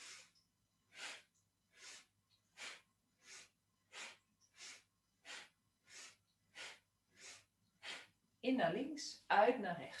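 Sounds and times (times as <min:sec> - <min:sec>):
quick forceful nose breathing: 0:00.0 - 0:00.3, 0:00.9 - 0:08.2.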